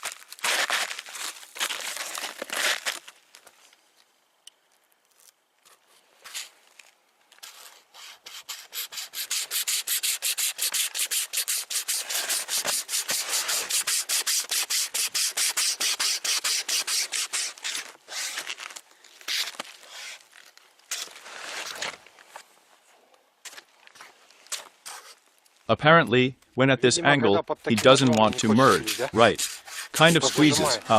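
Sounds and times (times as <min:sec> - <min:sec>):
wire saw rasping through wood: 0:07.9 - 0:18.6, 0:28.4 - 0:30.9.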